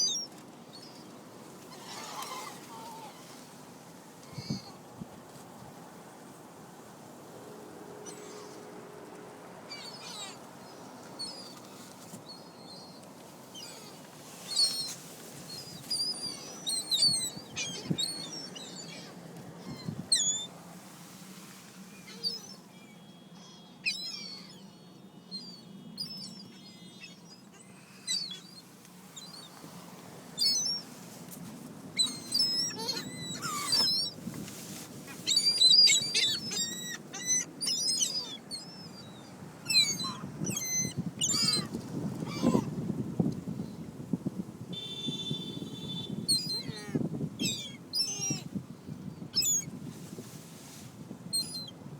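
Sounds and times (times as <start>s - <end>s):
gulls calling: 14.6s - 20.5s, 32.0s - 34.2s, 34.8s - 42.7s.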